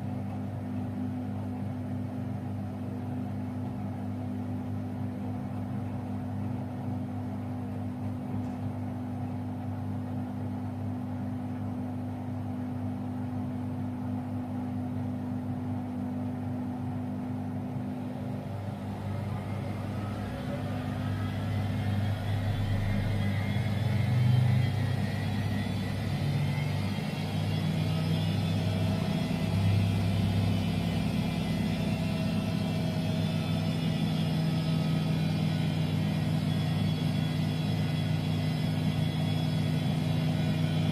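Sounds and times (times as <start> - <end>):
washing machine running: 0.0 - 40.9
drum whine rising in pitch: 17.6 - 40.9.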